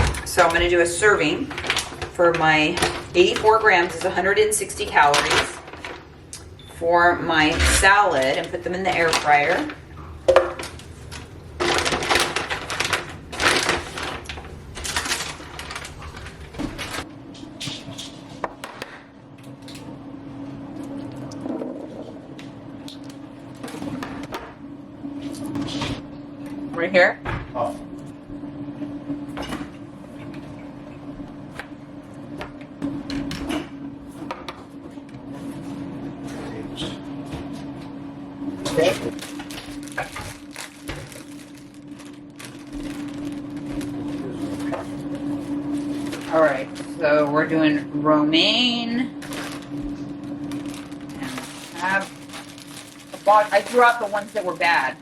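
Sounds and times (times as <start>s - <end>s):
frozen food crackling and rattling: 0.0s - 6.2s, 7.4s - 9.9s, 10.5s - 17.1s, 38.6s - 47.6s, 49.1s - 55.0s
low appliance hum: 0.0s - 55.0s.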